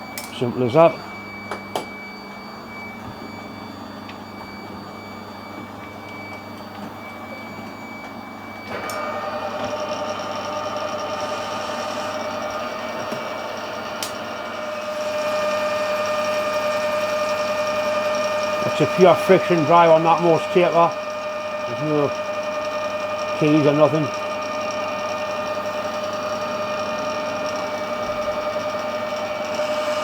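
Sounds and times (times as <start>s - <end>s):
lathe cutting whine: 0.0s - 30.0s
metal lathe humming: 7.6s - 30.0s.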